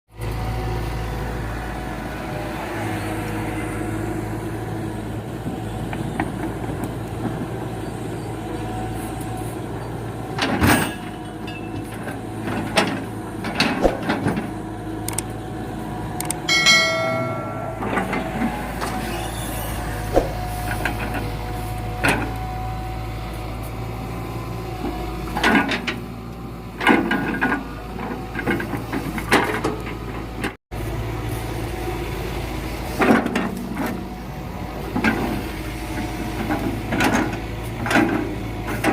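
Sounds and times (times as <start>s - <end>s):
excavator diesel engine: 0.1s - 38.9s
knocks and clatters of logs: 10.4s - 14.6s
high-pitched squeal: 16.5s - 20.6s.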